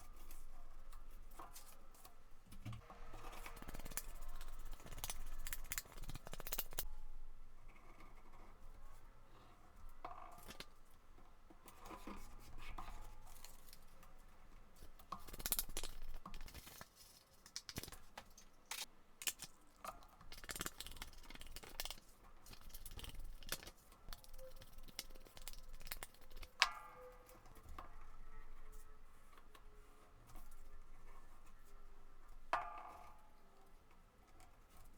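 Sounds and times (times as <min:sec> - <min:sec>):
paper rustling and folding: 0:01.5 - 0:06.8, 0:15.2 - 0:19.5, 0:20.2 - 0:26.6.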